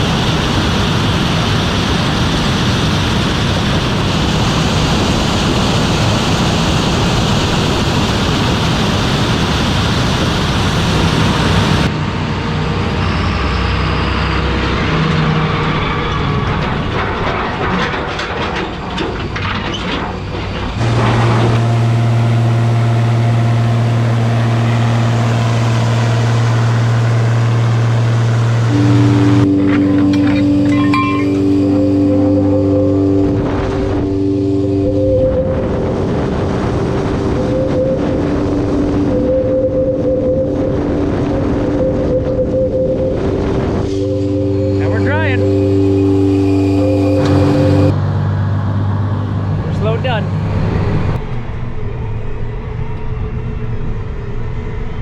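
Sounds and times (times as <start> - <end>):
farm machinery rumble: 0.0 - 51.7
low engine hum: 20.3 - 55.0.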